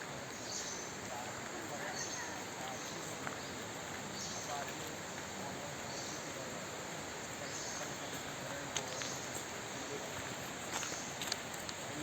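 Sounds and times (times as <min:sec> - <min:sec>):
background hiss: 0:00.0 - 0:12.0.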